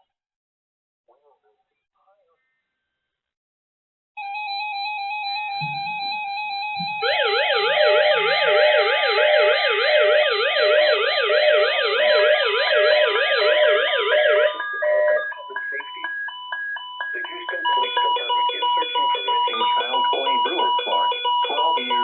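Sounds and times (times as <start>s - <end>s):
siren-like warble: 4.2s - 22.0s
rapid beeping tones: 5.5s - 22.0s.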